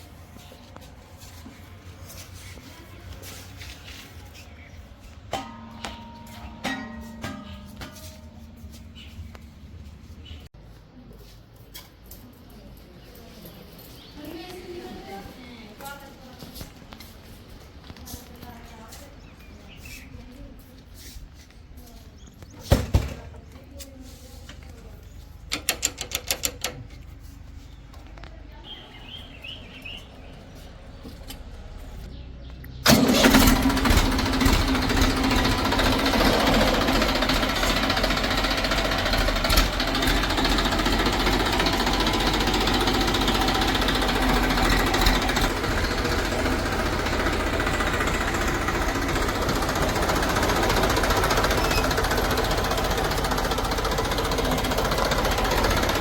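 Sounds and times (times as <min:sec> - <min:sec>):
heavy diesel engine running: 0:00.0 - 0:10.5, 0:32.8 - 0:56.0.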